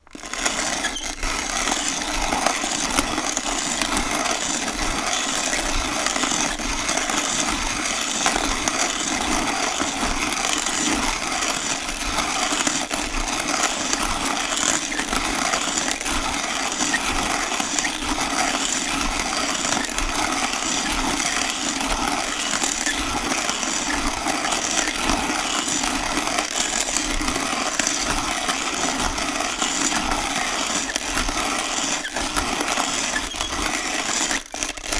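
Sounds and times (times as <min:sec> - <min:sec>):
hand-cranked coffee grinder: 0:00.0 - 0:34.9.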